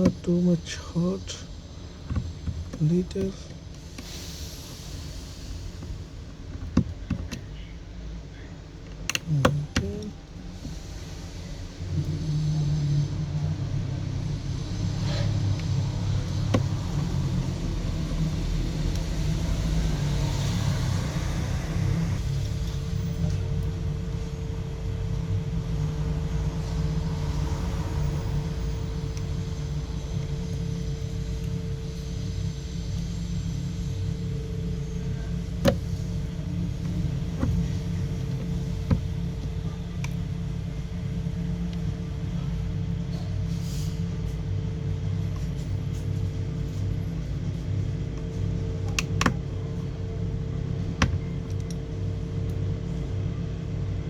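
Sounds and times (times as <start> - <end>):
faint constant hum: 0.0 - 54.0
low rumble: 9.3 - 54.0.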